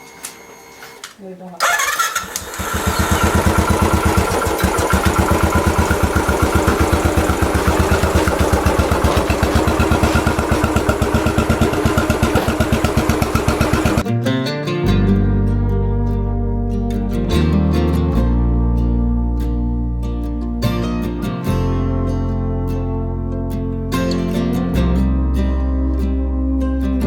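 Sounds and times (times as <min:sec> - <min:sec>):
motorcycle engine idling: 0:02.4 - 0:14.0.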